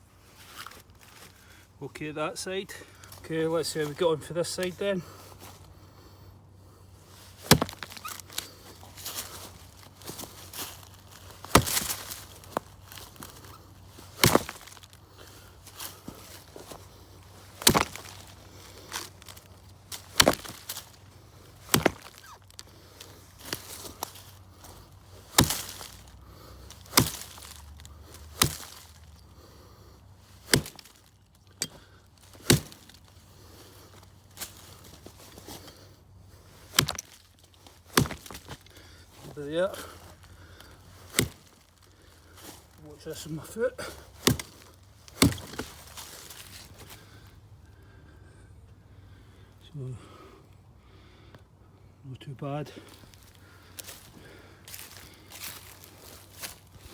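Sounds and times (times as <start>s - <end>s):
rustling: 6.8s - 47.4s, 52.8s - 56.9s
axe chopping into log: 7.4s - 13.5s, 14.1s - 14.8s, 17.4s - 21.0s, 21.6s - 22.6s, 25.2s - 29.0s, 30.4s - 31.0s, 31.6s - 33.1s, 36.5s - 41.6s, 42.4s - 46.7s, 54.7s - 56.6s.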